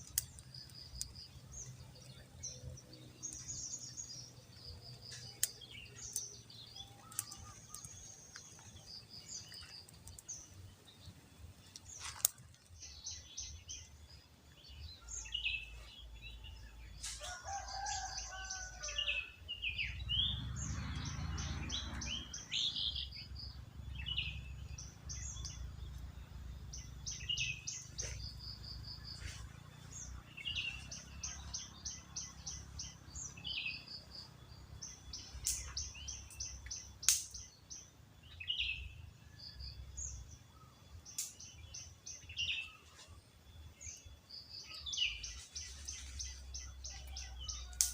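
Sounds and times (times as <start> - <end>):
small birds chirping: 0.0 - 47.9
low rumbling: 19.7 - 40.4
sharp clicks: 35.4 - 37.4.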